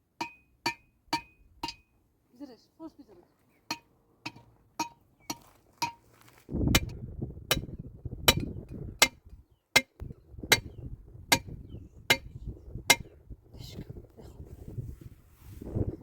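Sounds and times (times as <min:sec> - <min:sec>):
rough rustling scraping: 0:05.3 - 0:07.0, 0:14.3 - 0:16.0.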